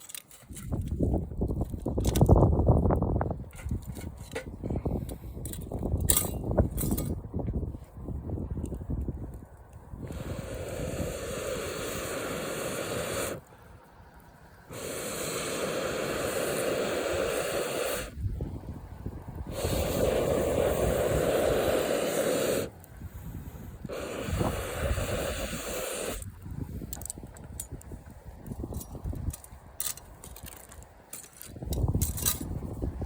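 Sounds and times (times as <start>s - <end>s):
air blown into campfire: 9.9s - 13.9s, 14.6s - 26.9s.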